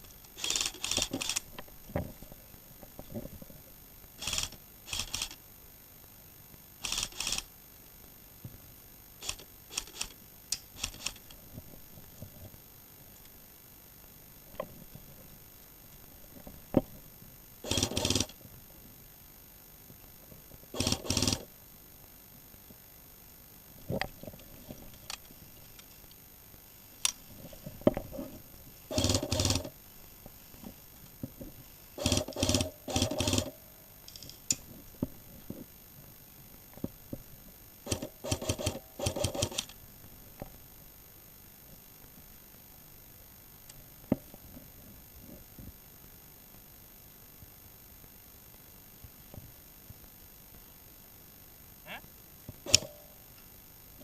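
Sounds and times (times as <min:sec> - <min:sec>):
airsoft gun automatic bursts: 0:00.4 - 0:01.4, 0:17.6 - 0:18.3, 0:20.8 - 0:21.5, 0:28.9 - 0:29.7, 0:32.0 - 0:33.5, 0:37.9 - 0:39.7.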